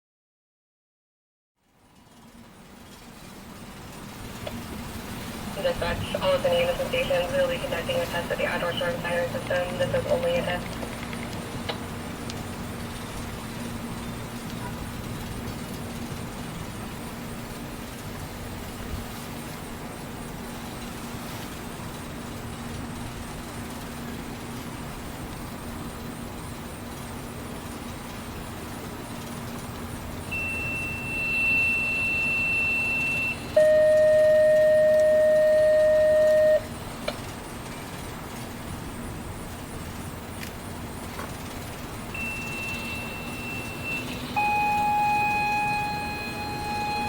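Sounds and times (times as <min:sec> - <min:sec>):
steady background hum: 0:01.8 - 0:47.0
two-tone radio tones: 0:05.6 - 0:10.9, 0:30.3 - 0:36.7, 0:42.2 - 0:47.0.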